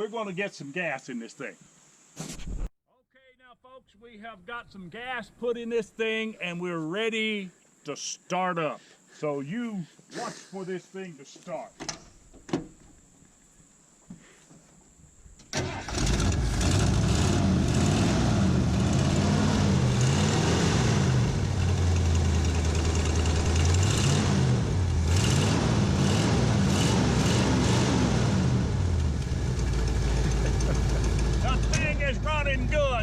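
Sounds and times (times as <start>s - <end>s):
truck engine starting: 15.5s - 32.9s
engine revving: 15.6s - 32.1s.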